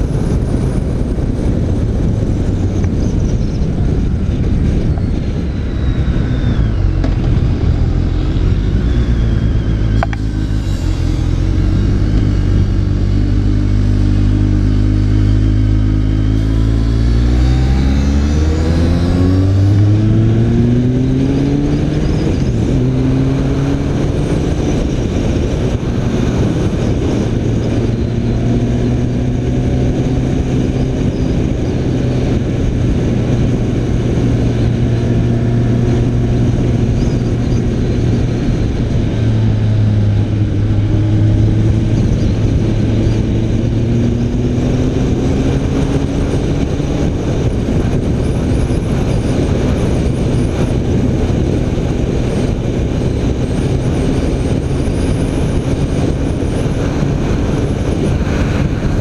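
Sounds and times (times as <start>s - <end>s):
motorcycle engine running: 0.0s - 59.0s
rushing noise: 3.6s - 24.0s.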